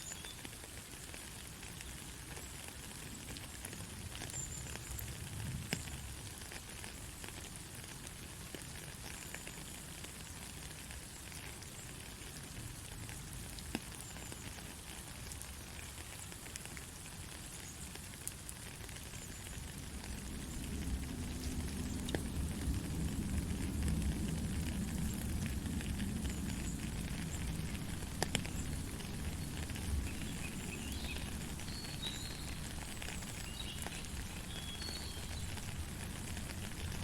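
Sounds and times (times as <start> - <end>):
heavy rain hissing: 11.0 - 37.0
sharp drips: 18.3 - 37.0
low rumble of thunder: 19.7 - 37.0.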